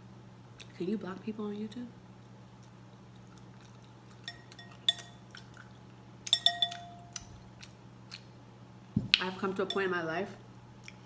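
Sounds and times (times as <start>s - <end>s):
steady low hum: 0.0s - 11.0s
tableware clinking: 4.3s - 5.2s, 6.3s - 7.2s.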